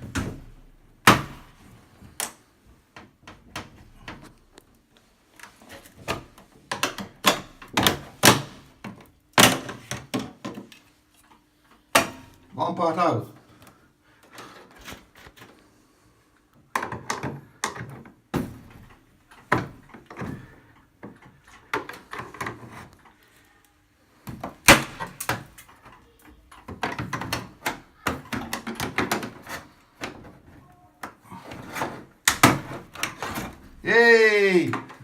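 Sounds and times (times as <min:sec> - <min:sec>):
washing machine parts knocking and rattling: 0:02.8 - 0:04.6, 0:05.4 - 0:10.8, 0:16.7 - 0:23.0, 0:24.2 - 0:33.8.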